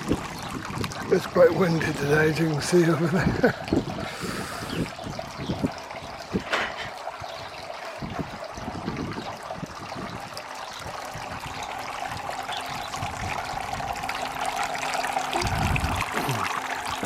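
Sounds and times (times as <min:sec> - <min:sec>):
wind buffeting microphone: 0:00.0 - 0:14.7, 0:15.3 - 0:17.0
water trickling over waterfall: 0:00.0 - 0:17.0.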